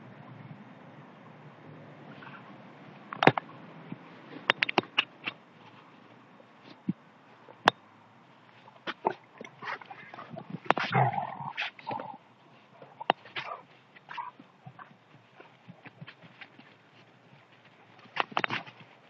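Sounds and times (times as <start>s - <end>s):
dogs growling and snarling: 9.4s - 12.2s
sharp snaps and clacks: 18.0s - 18.9s.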